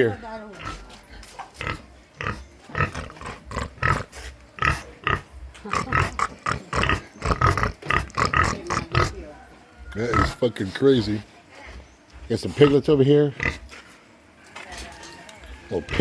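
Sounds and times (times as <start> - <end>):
pig grunting: 0.5 - 9.2, 10.0 - 10.5, 12.5 - 13.7.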